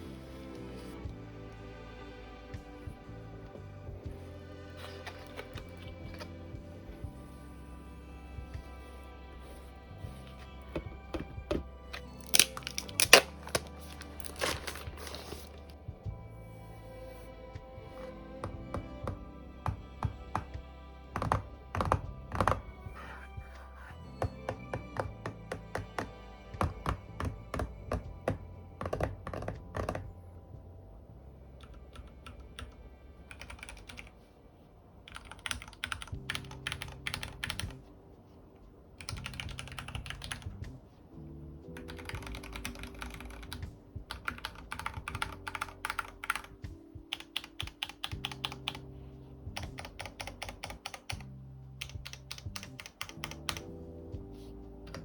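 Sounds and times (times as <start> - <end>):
background music: 0.0 - 55.0
typing on mechanical keyboard: 21.2 - 22.7, 24.5 - 30.1, 31.6 - 34.1, 35.1 - 37.8, 39.0 - 40.5, 41.8 - 48.9, 49.6 - 53.7.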